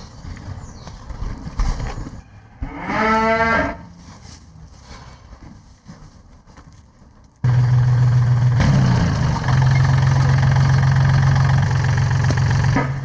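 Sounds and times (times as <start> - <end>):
engine running with deep hum: 7.4 - 13.0.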